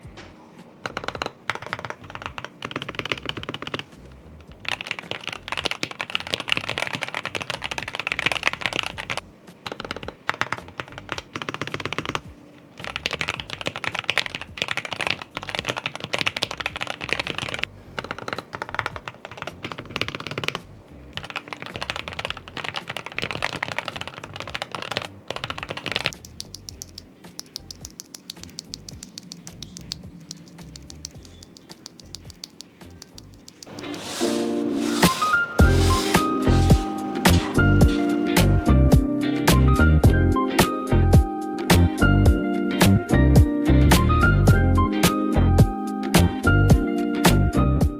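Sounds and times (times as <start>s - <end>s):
mechanical keyboard typing: 0.8s - 38.7s.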